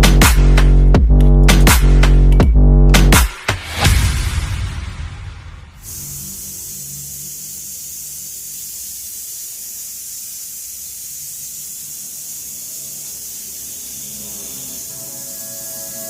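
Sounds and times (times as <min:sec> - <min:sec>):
food sizzling in a hot pan: 0:05.8 - 0:16.0.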